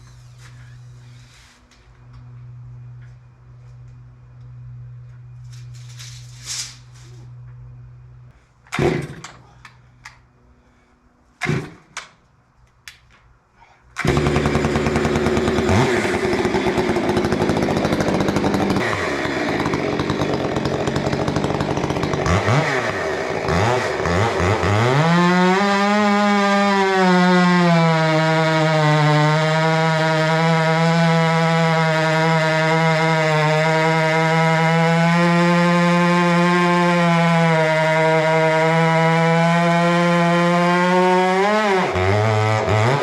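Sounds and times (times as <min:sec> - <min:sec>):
small gasoline engine revving: 0:08.8 - 0:09.3, 0:14.0 - 0:43.0.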